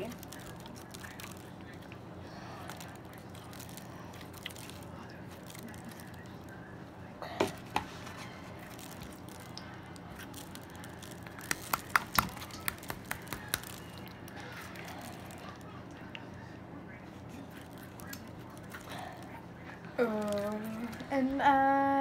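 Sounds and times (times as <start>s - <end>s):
slime popping and clicking: 11.4s - 14.1s.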